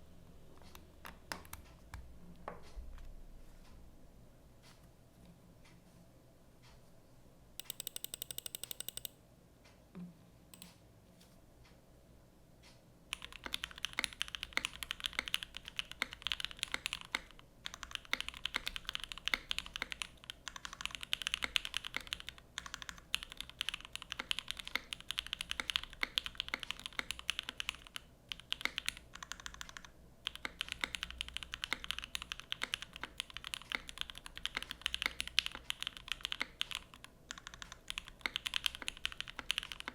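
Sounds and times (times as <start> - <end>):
mechanical keyboard clacks: 7.6 - 9.1, 13.1 - 39.9.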